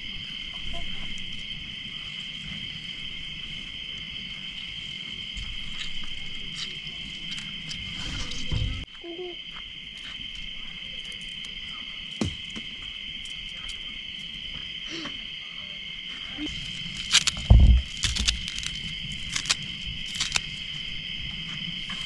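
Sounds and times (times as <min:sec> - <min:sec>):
crickets chirping: 0:00.0 - 0:22.0
small clicks: 0:16.9 - 0:20.4
knocks and thud: 0:17.3 - 0:18.4.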